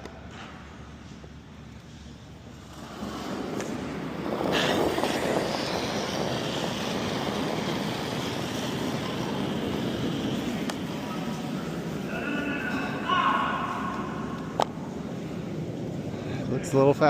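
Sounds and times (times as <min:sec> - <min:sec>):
curling stone sliding on ice: 0:02.6 - 0:11.0.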